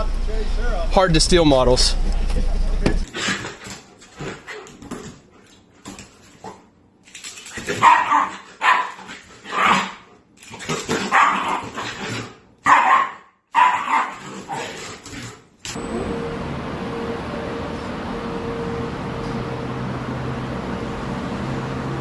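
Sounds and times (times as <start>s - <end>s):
dog barking: 7.7s - 10.0s, 11.0s - 11.9s, 12.6s - 14.7s.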